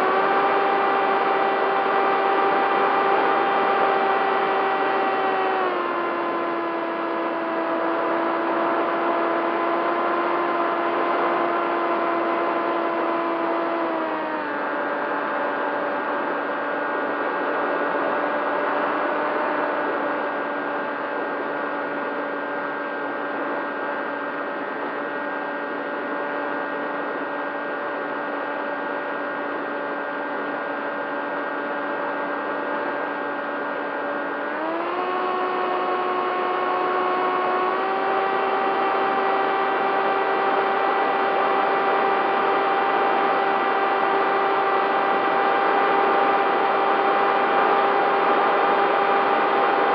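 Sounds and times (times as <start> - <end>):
electric motor and propeller whine: 0.0 - 49.9.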